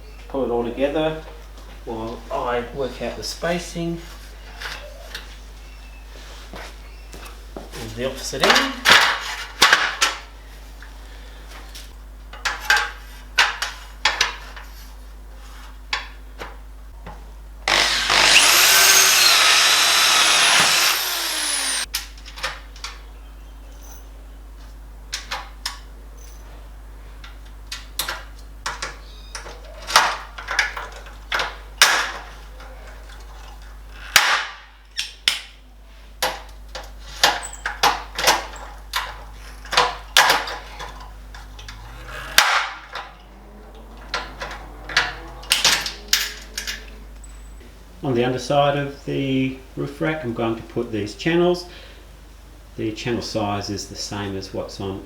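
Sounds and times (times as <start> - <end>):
electric drill drilling metal: 17.6 - 21.9
clicks and knocks of metal sections: 44.0 - 46.9.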